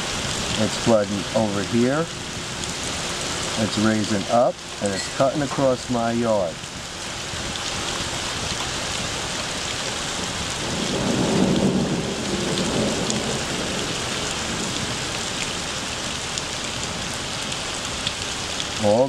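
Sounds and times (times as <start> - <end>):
heavy rain falling: 0.0 - 19.0
low rumble of thunder: 10.2 - 15.2.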